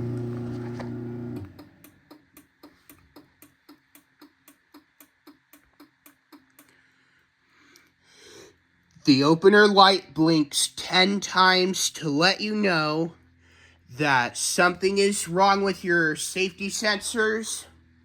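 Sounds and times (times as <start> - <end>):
garage door opener motor humming: 0.0 - 2.0.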